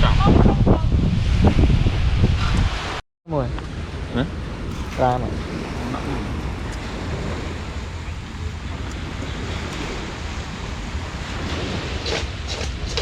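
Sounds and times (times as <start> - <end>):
wind buffeting the microphone: 0.0 - 13.0
sea waves rushing onto beach: 3.7 - 13.0.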